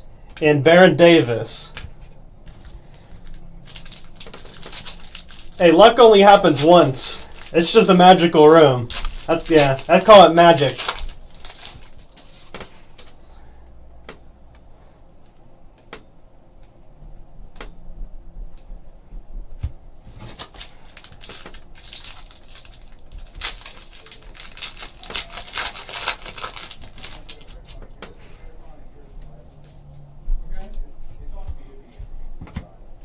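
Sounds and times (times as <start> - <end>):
trading cards being handled: 1.7 - 13.2, 20.1 - 27.8.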